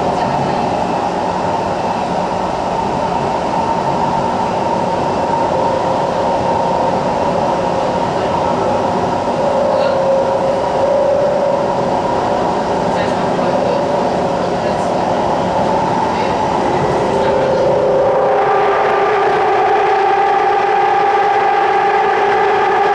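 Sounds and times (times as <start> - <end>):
train rolling rumble: 0.0 - 22.9
whining motor hum: 4.7 - 22.9.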